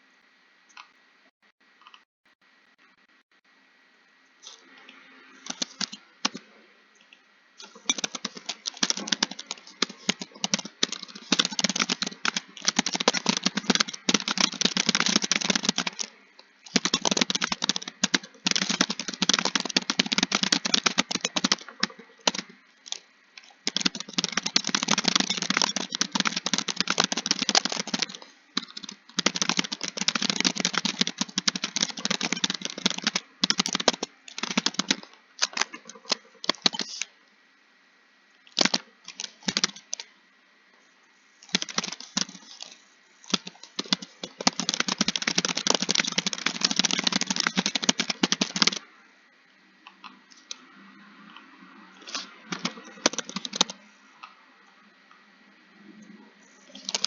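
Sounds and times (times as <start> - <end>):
fast keyboard typing: 5.3 - 6.4, 7.6 - 37.1, 38.5 - 40.1, 41.4 - 48.8, 52.0 - 53.8, 56.6 - 57.0.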